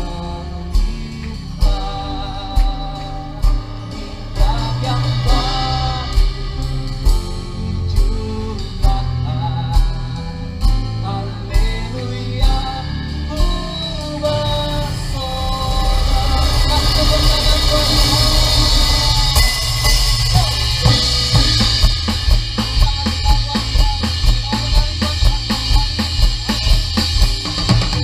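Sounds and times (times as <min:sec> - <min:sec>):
live band gospel song with singing: 0:00.0 - 0:28.0
kick drum beat: 0:19.3 - 0:28.0.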